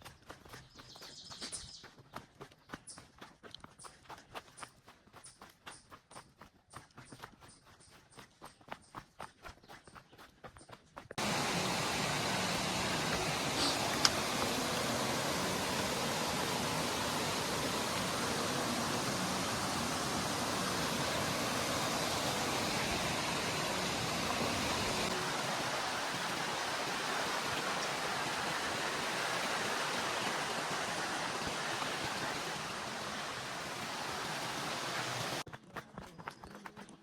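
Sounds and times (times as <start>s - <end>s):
steady rushing noise: 11.2s - 35.4s.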